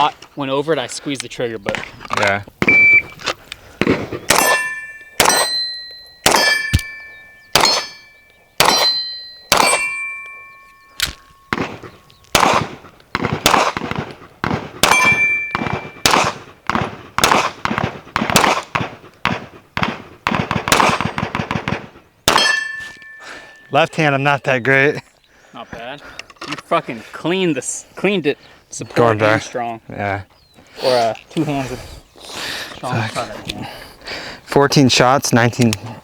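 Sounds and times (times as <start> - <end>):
gunshots: 3.8 - 10.0, 11.0 - 22.6
steel targets ringing: 4.3 - 11.8, 14.8 - 16.2, 22.3 - 24.7.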